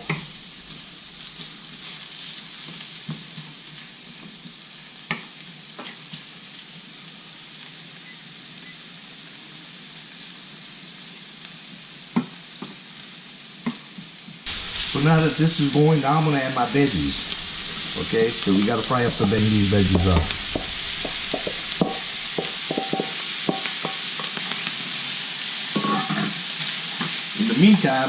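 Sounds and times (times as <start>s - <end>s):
ham sizzling in oil: 0.0s - 8.1s, 8.9s - 28.0s.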